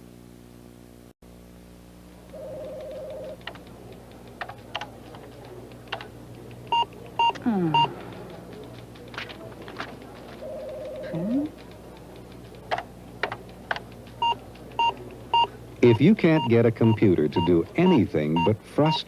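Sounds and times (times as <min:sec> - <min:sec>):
steady low hum: 0:00.0 - 0:19.0
keyboard keys clicking: 0:02.3 - 0:18.1
electronic computer beeps: 0:06.7 - 0:07.9, 0:14.2 - 0:19.0.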